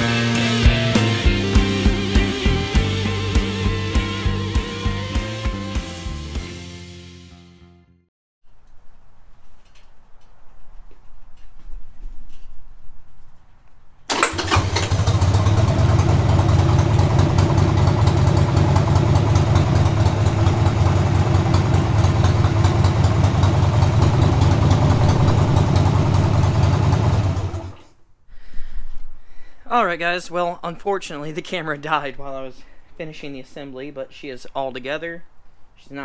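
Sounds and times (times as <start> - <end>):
motorcycle engine idling: 14.3 - 27.9.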